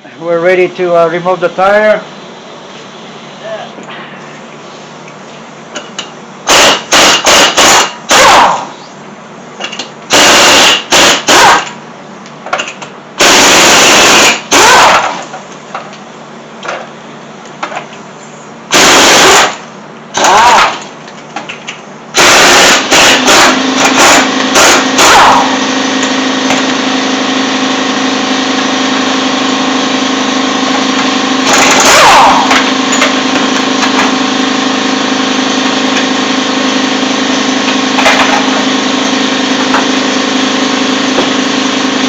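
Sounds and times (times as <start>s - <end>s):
impact wrench hammering: 5.8s - 8.6s, 9.6s - 11.8s, 22.1s - 26.8s, 30.7s - 34.2s.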